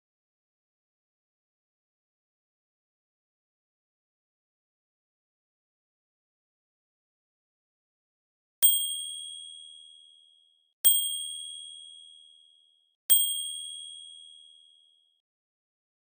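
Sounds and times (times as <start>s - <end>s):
typewriter bell ding: 13.1s - 14.5s.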